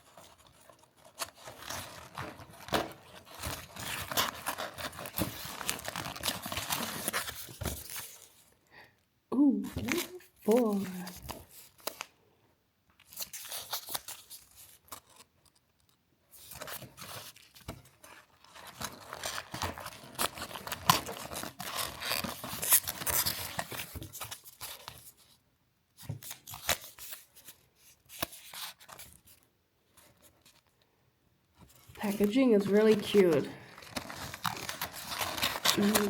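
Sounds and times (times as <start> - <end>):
packaging crinkling: 0.0 - 8.5, 13.0 - 25.1, 31.7 - 36.0
paper tearing: 18.4 - 24.9, 32.0 - 36.0.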